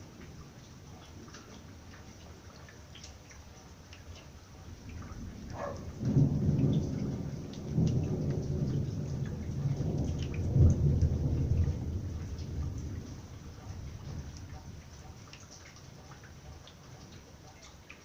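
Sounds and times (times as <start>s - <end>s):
light rain dripping: 0.0s - 18.0s
thunder rumbling: 4.9s - 14.9s.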